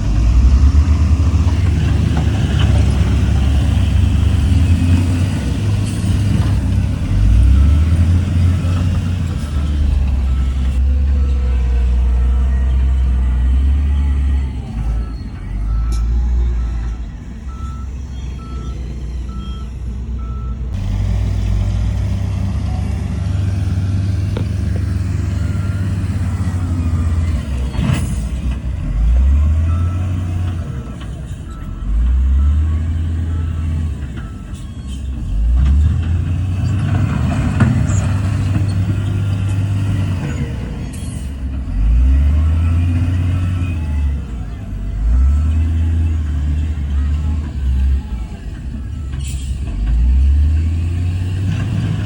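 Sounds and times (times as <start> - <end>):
diesel machinery revving: 0.0 - 52.0
reversing alarm beeping: 7.2 - 20.6, 24.4 - 35.4.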